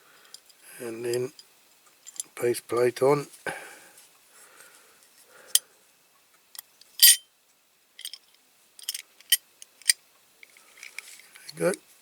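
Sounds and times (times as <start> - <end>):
metal parts clicking and clinking: 7.0 - 7.2, 8.0 - 10.0.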